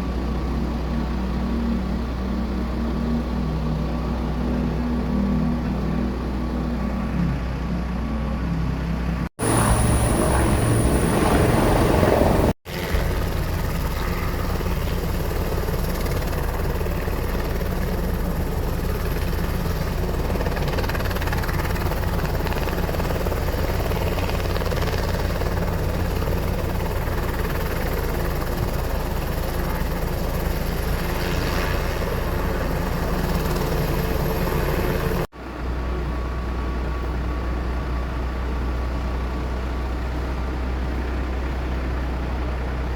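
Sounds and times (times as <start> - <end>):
aircraft engine and propeller: 0.0 - 42.9.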